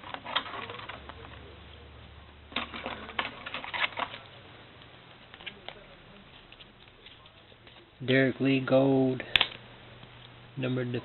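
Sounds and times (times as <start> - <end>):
trading cards shuffling: 0.0 - 1.8, 2.5 - 8.0.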